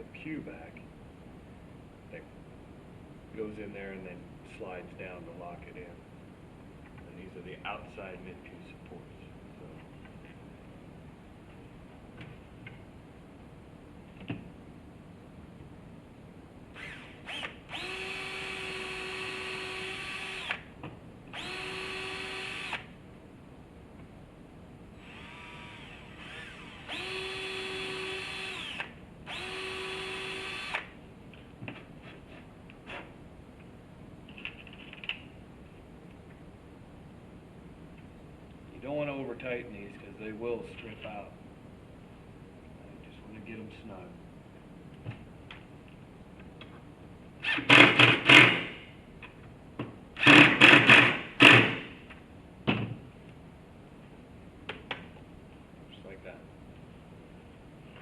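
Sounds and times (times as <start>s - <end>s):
power drill driving screws: 16.8s - 20.7s, 21.3s - 22.9s, 25.0s - 31.0s, 47.4s - 48.8s, 50.2s - 51.9s.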